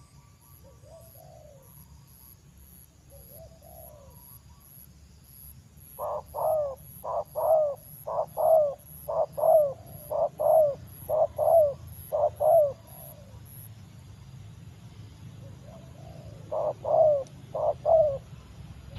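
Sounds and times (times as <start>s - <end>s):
dove cooing: 0.0s - 1.8s, 3.1s - 4.4s, 5.9s - 13.6s, 15.4s - 18.3s.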